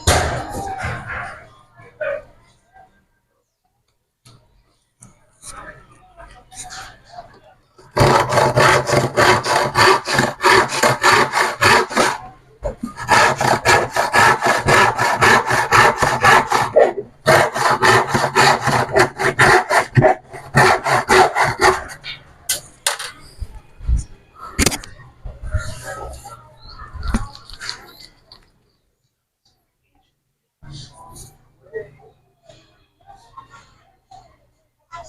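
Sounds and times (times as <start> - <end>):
hand saw cutting plywood: 7.9 - 22.0.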